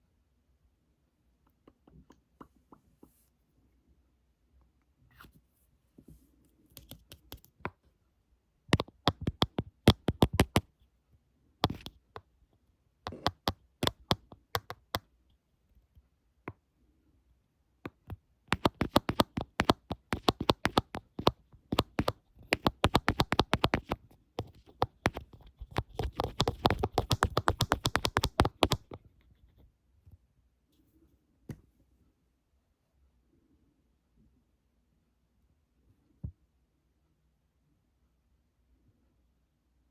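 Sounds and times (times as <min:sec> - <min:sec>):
fingernails tapping on a screen: 0:08.8 - 0:10.6, 0:11.6 - 0:12.0, 0:13.1 - 0:15.0, 0:17.9 - 0:29.0
fingernails scratching: 0:18.5 - 0:29.0.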